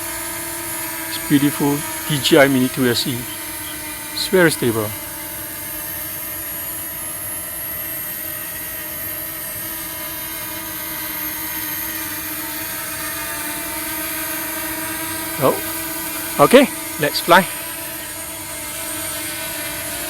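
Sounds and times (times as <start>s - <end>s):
drone propellers buzzing: 0.9s - 7.2s, 13.2s - 19.7s.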